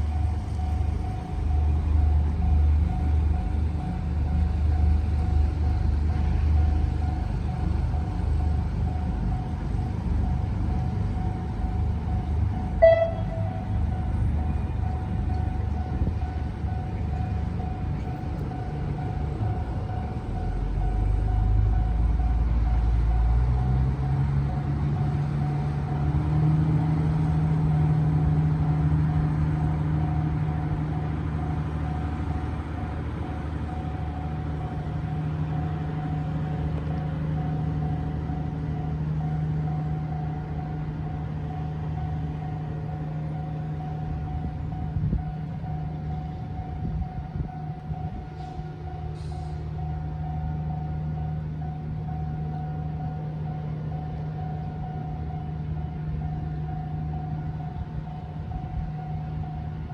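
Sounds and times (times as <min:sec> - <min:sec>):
heavy engine running: 0:00.0 - 0:59.9
level crossing alarm ringing: 0:11.1 - 0:15.0.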